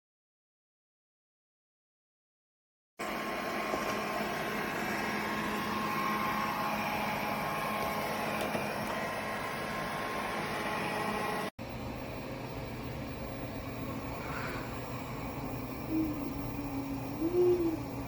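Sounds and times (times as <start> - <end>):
robot vacuum whirring: 3.0 - 11.5.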